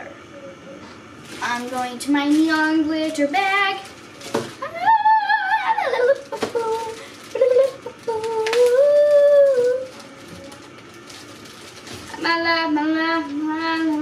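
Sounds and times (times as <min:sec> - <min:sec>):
girl humming wordless tune: 0:04.7 - 0:10.1.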